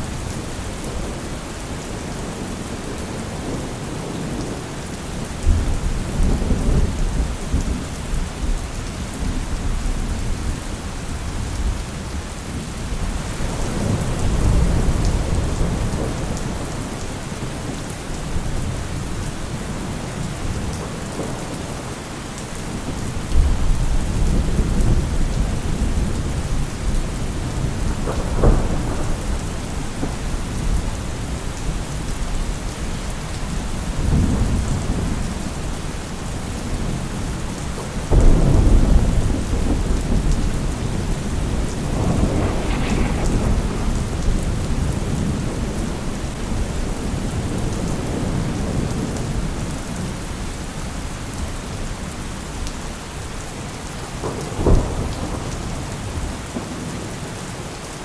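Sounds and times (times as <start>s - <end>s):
heavy rain hissing: 0.0s - 52.5s
thunder rumbling: 9.2s - 17.7s, 22.6s - 50.2s, 54.2s - 57.1s
sharp thunder crack: 23.4s - 30.9s, 38.1s - 48.3s.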